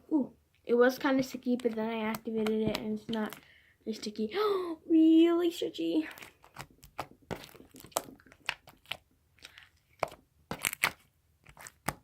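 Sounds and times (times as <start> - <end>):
slime clicking and crackling: 6.1 - 12.0.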